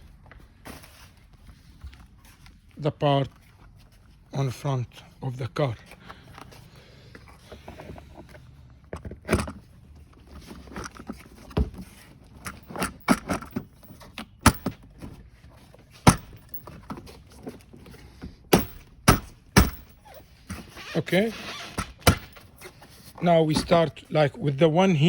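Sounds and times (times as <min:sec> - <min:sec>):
hard plastic parts knocking: 0:12.4 - 0:15.2, 0:16.0 - 0:17.0, 0:18.4 - 0:20.6, 0:21.8 - 0:22.4.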